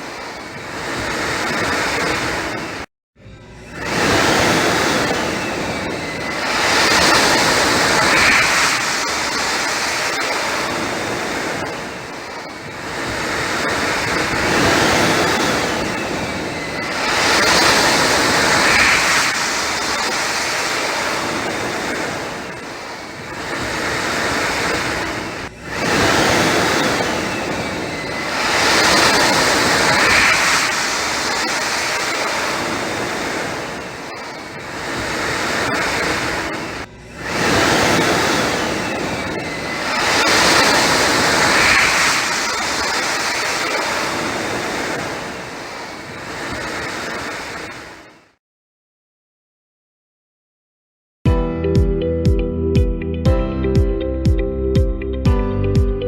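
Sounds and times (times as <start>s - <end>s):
electric hand dryer blowing: 3.8s - 46.9s.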